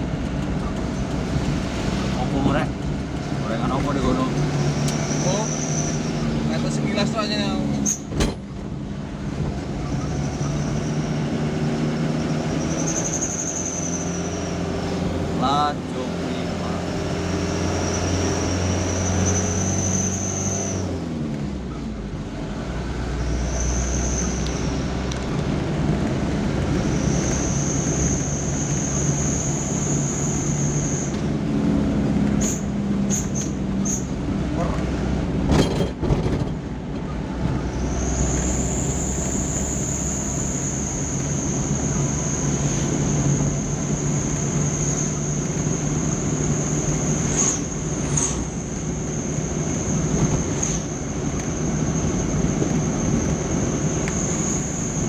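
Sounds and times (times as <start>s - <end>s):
truck engine running: 0.0s - 4.8s
road rumble: 0.0s - 55.0s
vehicle engine running: 0.0s - 55.0s.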